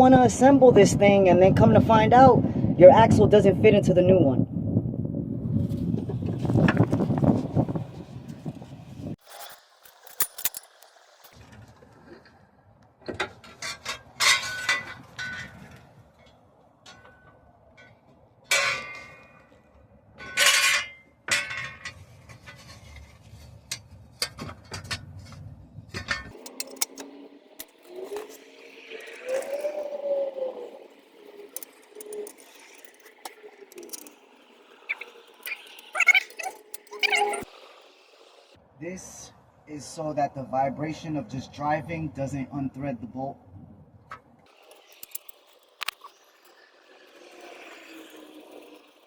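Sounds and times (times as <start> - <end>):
metal tools clinking and scraping: 9.2 - 11.3, 13.6 - 15.7, 18.5 - 19.4, 20.2 - 23.0, 26.0 - 37.5, 44.5 - 49.0.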